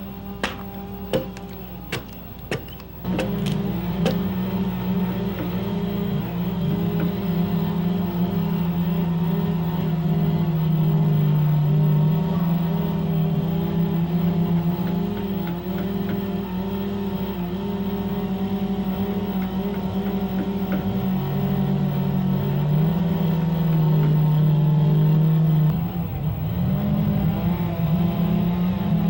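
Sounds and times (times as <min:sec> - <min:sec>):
chainsaw running at high revs: 0:03.0 - 0:25.7.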